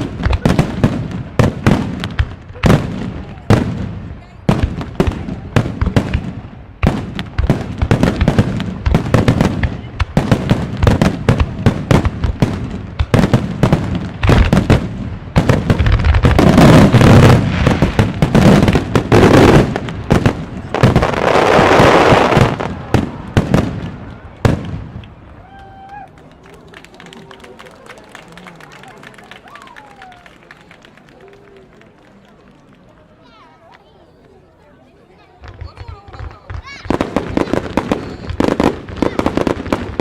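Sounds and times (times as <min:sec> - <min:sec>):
fireworks launches and bursts: 0:00.0 - 0:25.3, 0:35.4 - 0:40.0
fireworks crackle: 0:00.0 - 0:32.7, 0:35.4 - 0:40.0.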